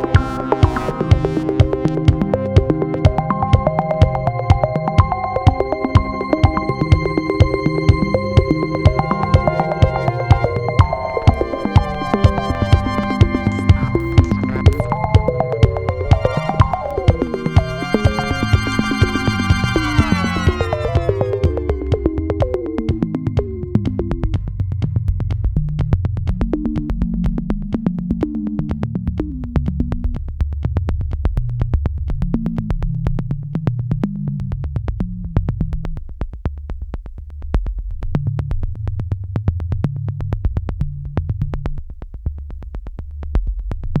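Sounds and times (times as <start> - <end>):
fast drum-machine beat: 0.0 - 23.5
synthesizer bass line: 5.8 - 23.0.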